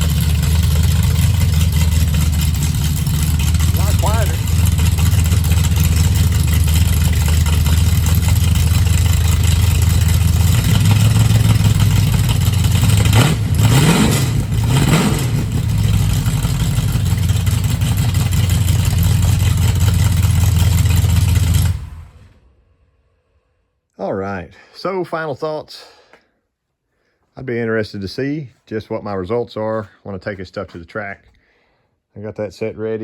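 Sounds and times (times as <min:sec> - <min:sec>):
car engine idling and revving: 0:00.0 - 0:23.3.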